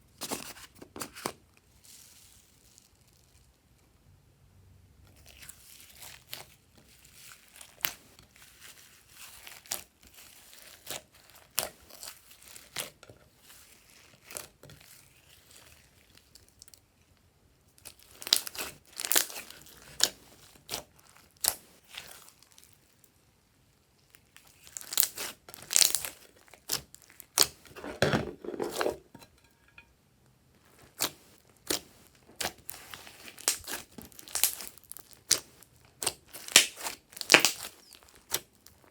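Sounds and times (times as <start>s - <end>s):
slime popping and crackling: 24.4s - 27.6s, 30.9s - 38.9s.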